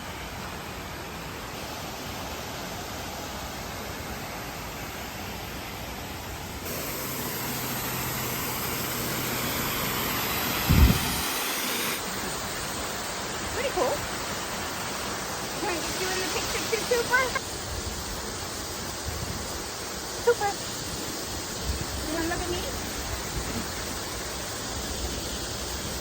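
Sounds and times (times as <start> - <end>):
waterfall rushing: 0.0 - 19.0.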